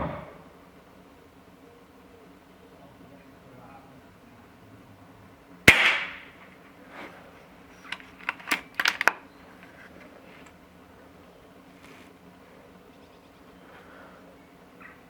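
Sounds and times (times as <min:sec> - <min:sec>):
air rifle shot with echo: 0:00.0 - 0:00.6, 0:05.7 - 0:06.5
metallic rifle lever clicks: 0:07.8 - 0:09.7.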